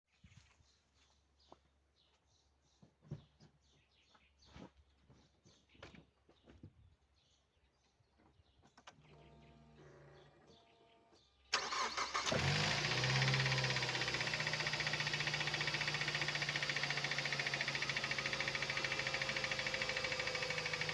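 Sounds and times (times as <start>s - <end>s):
starter motor cranking: 11.6s - 20.9s
car engine idling with knocking: 12.4s - 20.9s.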